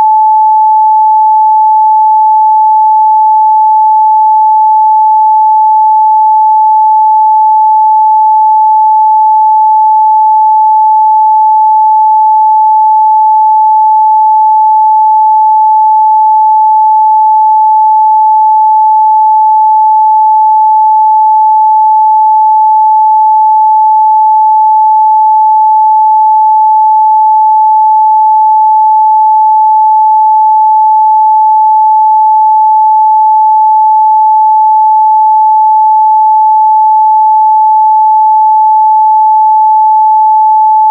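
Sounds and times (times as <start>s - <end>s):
sine-wave test tone: 0.0s - 40.9s.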